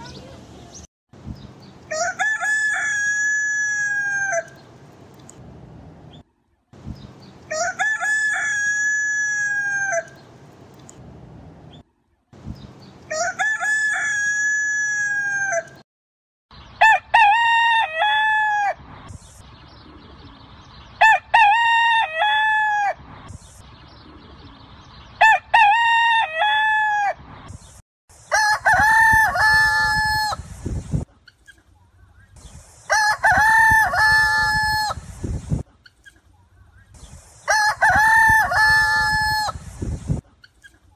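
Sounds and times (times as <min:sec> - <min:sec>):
roosters crowing: 0:01.8 - 0:04.6, 0:07.4 - 0:10.2, 0:13.1 - 0:15.8, 0:16.8 - 0:18.8, 0:21.0 - 0:23.1, 0:25.2 - 0:27.3, 0:28.3 - 0:30.5, 0:32.9 - 0:35.1, 0:37.5 - 0:39.7.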